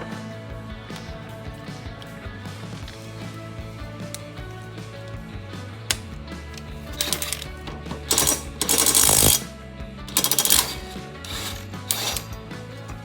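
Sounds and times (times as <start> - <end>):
background music: 0.0 - 13.0
metal tools clinking and rattling: 6.9 - 9.5, 10.1 - 12.3.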